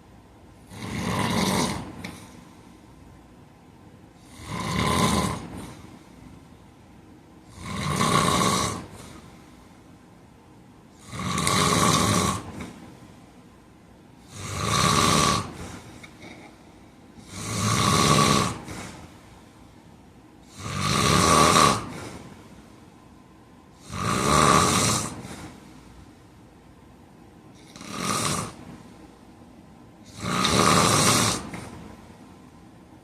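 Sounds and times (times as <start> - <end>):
man snoring loudly: 0.6 - 2.2, 4.2 - 5.8, 7.5 - 9.2, 11.0 - 12.7, 14.2 - 16.4, 17.2 - 19.0, 20.4 - 22.2, 23.8 - 25.5, 27.6 - 28.7, 30.0 - 31.7.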